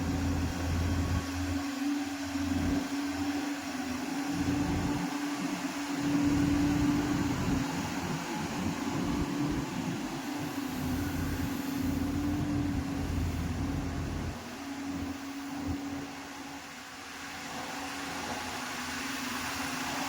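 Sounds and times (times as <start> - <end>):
diesel engine running: 0.0 - 3.3, 4.3 - 5.1, 6.0 - 16.2.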